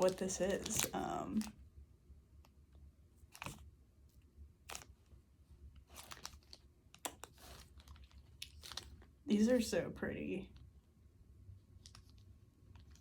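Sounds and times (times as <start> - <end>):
wrapping paper crinkling: 0.0 - 1.6, 5.8 - 9.2
low steady hum: 0.0 - 13.0.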